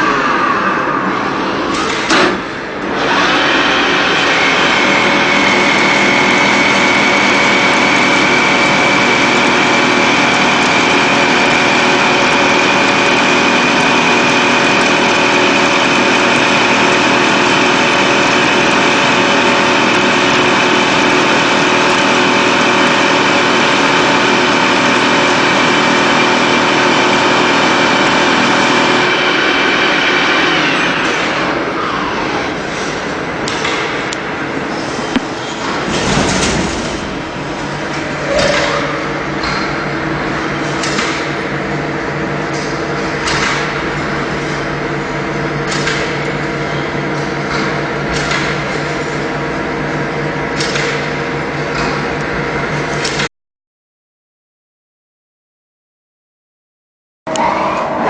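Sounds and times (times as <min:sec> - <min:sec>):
lathe mechanical whine: 0:00.0 - 0:35.4
sharp machine knock: 0:43.2 - 0:43.9, 0:50.6 - 0:52.2.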